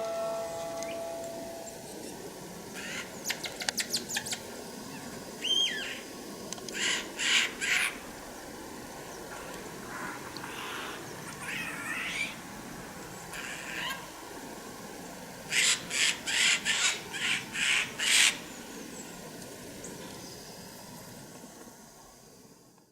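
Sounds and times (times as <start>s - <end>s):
outdoor hiss: 0.0s - 22.9s
bird calling harshly: 2.8s - 3.1s.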